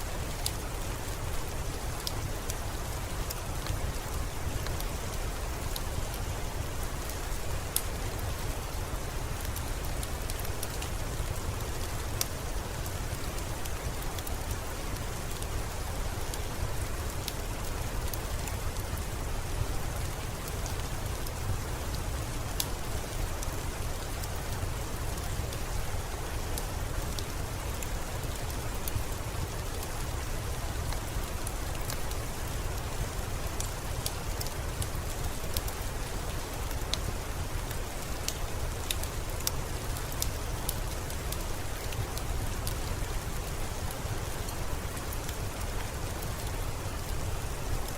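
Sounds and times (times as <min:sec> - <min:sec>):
steady rain hiss: 0:00.0 - 0:47.9
fire crackling and popping: 0:03.2 - 0:05.0, 0:26.2 - 0:47.9.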